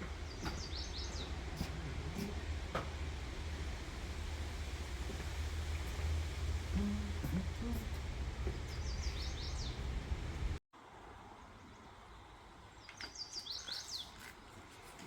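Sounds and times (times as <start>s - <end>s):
songbird chirping: 0.0s - 3.2s, 5.1s - 10.6s, 11.4s - 14.3s
low rumble: 0.0s - 10.6s.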